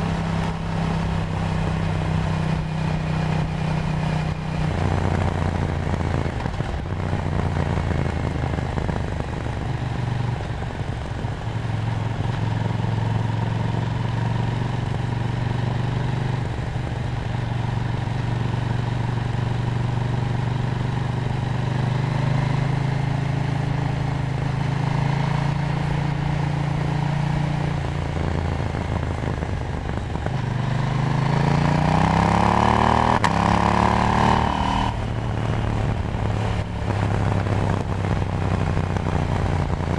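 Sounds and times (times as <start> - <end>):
motorcycle engine revving: 0.0 - 39.9
wind noise: 24.4 - 39.9.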